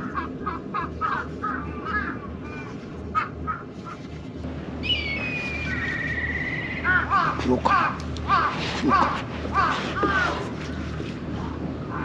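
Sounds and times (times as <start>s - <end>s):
steady low hum: 0.0s - 12.0s
birds calling: 4.8s - 10.6s.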